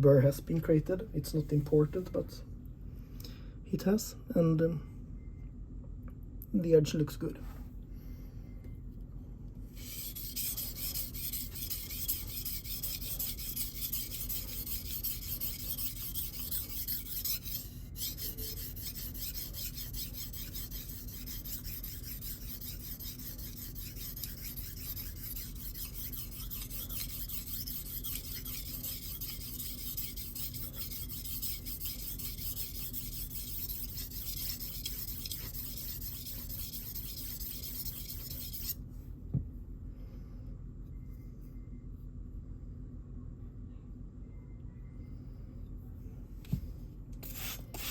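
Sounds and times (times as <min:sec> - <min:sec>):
knife scraping on sharpening stone: 0:09.8 - 0:38.8, 0:47.2 - 0:47.9.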